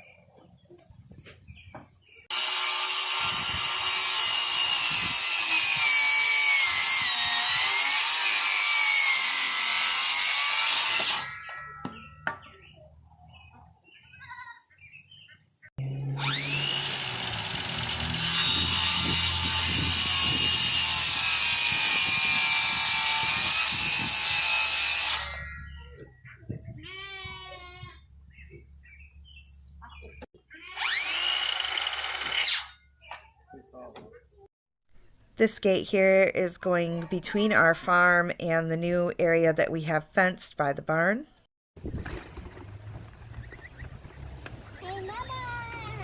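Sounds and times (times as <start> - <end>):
power tool whining into wood: 2.3 - 11.6, 15.8 - 25.4, 30.7 - 32.8.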